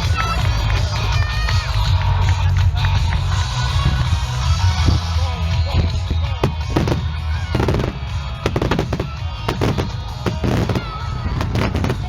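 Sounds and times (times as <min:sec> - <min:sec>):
background music: 0:00.0 - 0:12.0
fireworks bangs: 0:05.7 - 0:12.0.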